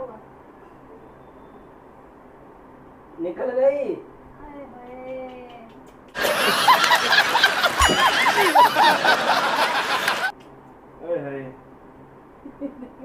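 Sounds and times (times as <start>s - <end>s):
canned laughter: 6.2s - 10.3s.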